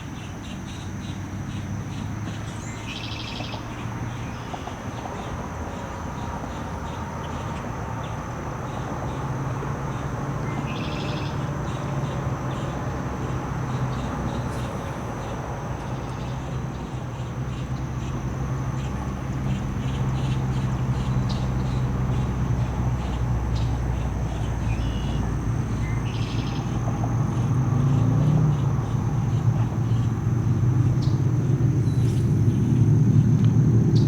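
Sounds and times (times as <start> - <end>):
low motor hum: 3.7 - 34.0
bird chirps: 10.5 - 11.9, 23.0 - 30.2, 30.8 - 34.0.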